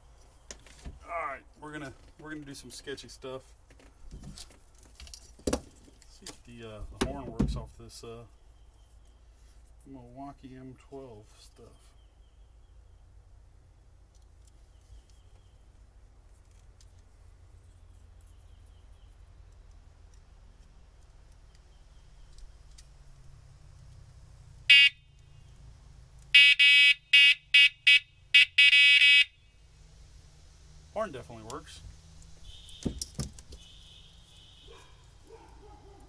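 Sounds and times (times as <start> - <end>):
electric horn blasts: 24.7 - 25.2, 26.4 - 29.5, 32.4 - 33.0, 33.6 - 34.7.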